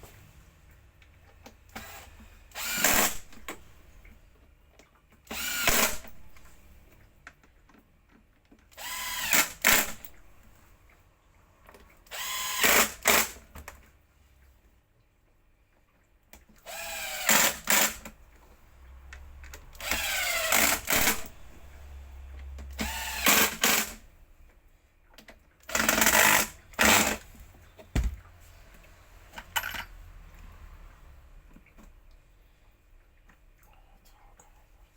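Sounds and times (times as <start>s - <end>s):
power drill running: 1.8s - 3.6s, 5.3s - 6.2s, 8.8s - 10.1s, 12.1s - 13.4s, 16.7s - 18.1s, 19.8s - 21.7s, 22.8s - 24.0s, 25.7s - 27.2s.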